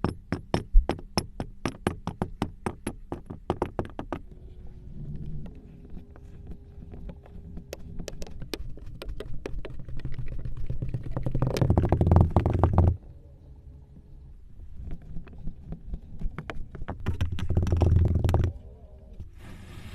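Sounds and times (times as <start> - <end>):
low squelchy rumble: 4.2 - 19.4
crackling and popping: 5.1 - 13.0, 14.8 - 18.6.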